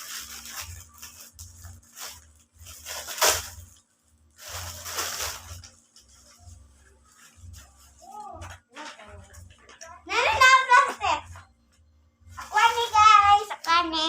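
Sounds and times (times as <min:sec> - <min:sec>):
plastic packaging rustling and tearing: 0:00.0 - 0:09.2, 0:12.3 - 0:13.6.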